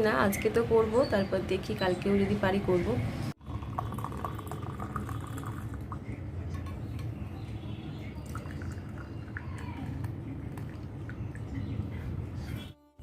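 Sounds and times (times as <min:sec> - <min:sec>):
utensils and dishes clinking: 0:06.4 - 0:07.4.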